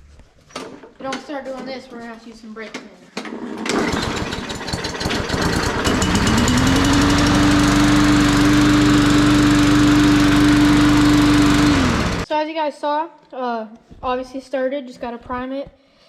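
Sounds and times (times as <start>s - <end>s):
lawn mower engine starting and running: 3.3s - 12.3s.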